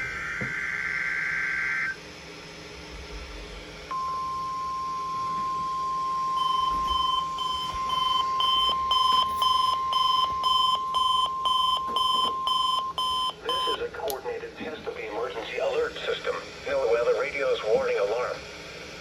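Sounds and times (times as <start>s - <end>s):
steady warning alarm tone: 0.0s - 2.0s, 3.9s - 14.0s
high-pitched alarm beeps: 3.9s - 13.8s.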